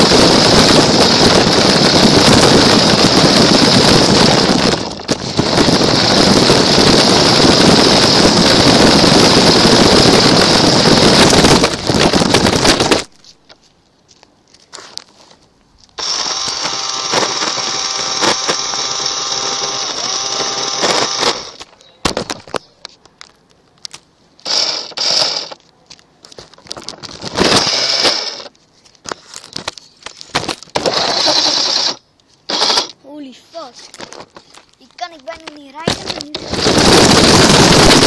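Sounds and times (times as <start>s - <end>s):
toy car motor whining: 0.0s - 13.0s, 16.0s - 21.7s, 24.4s - 25.6s, 27.3s - 28.5s, 30.7s - 33.0s, 35.8s - 38.0s.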